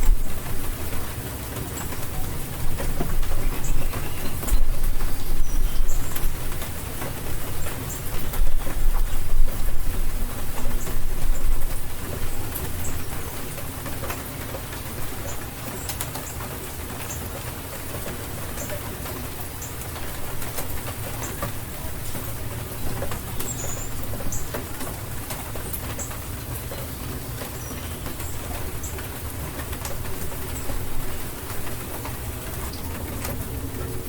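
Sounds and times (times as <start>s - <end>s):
drips and ticks: 0.0s - 34.0s
steady rain falling: 0.0s - 34.0s.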